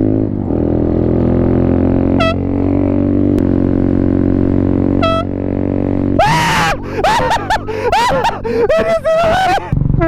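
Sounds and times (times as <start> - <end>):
air horn long blast: 2.1 - 2.5, 5.0 - 5.4.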